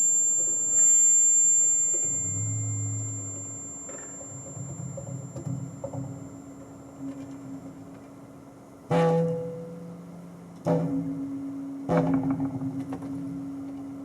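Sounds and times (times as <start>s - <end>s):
steady low hum: 0.0s - 9.0s
low ringing tone: 0.0s - 12.3s.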